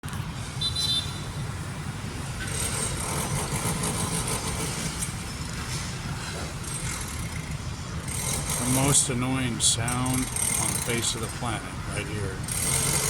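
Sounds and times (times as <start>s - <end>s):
power tool grinding concrete: 8.1s - 9.1s, 12.5s - 13.0s.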